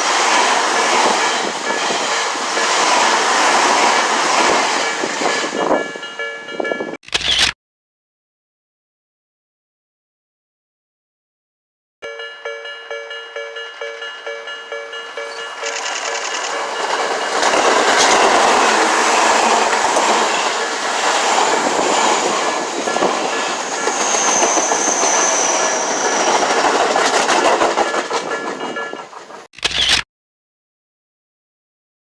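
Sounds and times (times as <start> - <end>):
train wheels clattering on rail joints: 0.0 - 5.9, 15.1 - 29.5
level crossing warning bell: 0.0 - 7.0, 12.0 - 29.5
high wheel squeal: 15.1 - 27.3.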